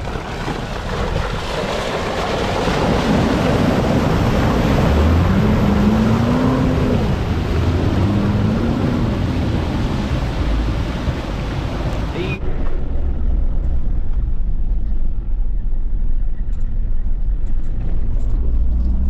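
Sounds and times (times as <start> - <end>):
wind buffeting microphone: 0.0 - 19.0
truck engine revving: 2.1 - 12.2.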